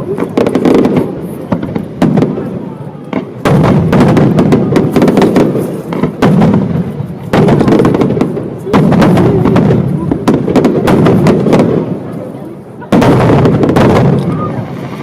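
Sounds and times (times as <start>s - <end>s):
fireworks bursting: 0.0s - 15.0s
fireworks crackle: 0.0s - 15.0s.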